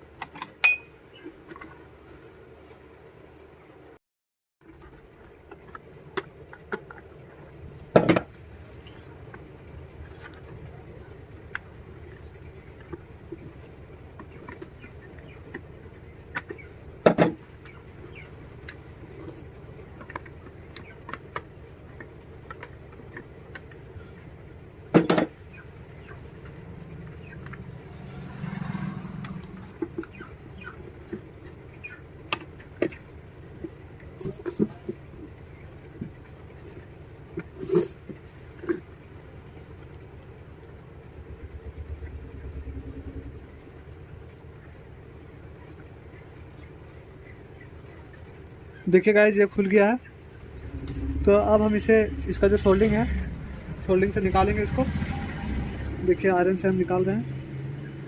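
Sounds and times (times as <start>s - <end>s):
short low rumble: 40.8s - 44.8s, 50.2s - 56.2s.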